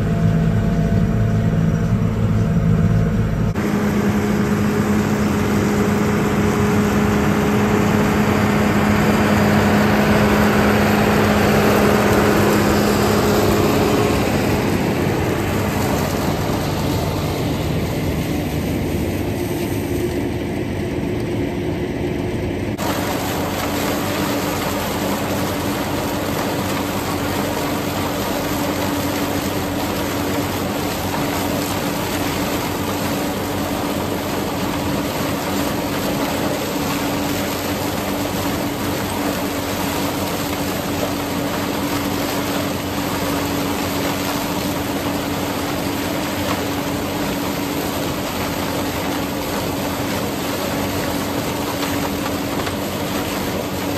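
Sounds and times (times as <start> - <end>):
tractor running under load: 0.0 - 53.9.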